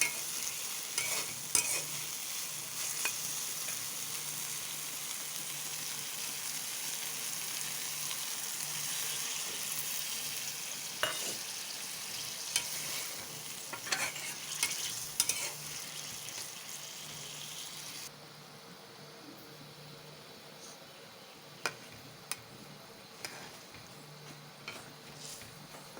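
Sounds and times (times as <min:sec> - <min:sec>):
spatula scraping and knocking pan: 0:00.0 - 0:02.0, 0:11.0 - 0:11.5, 0:12.5 - 0:15.8, 0:23.2 - 0:23.9
food sizzling in hot oil: 0:00.0 - 0:18.1.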